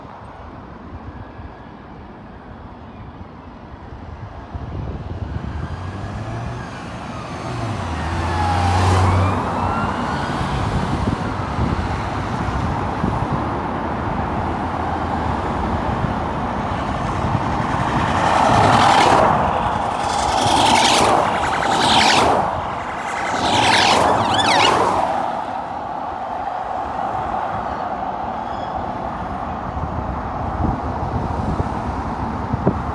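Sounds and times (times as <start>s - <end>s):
car engines and tyres: 1.5s - 32.9s
car rushing past: 5.1s - 32.8s
police sirens wailing: 5.6s - 29.9s.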